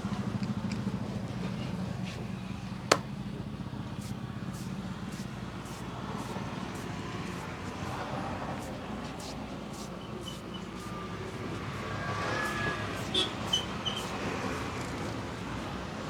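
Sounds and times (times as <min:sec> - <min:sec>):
road traffic hum: 0:00.0 - 0:16.0
hands rubbing over hair: 0:04.0 - 0:15.8.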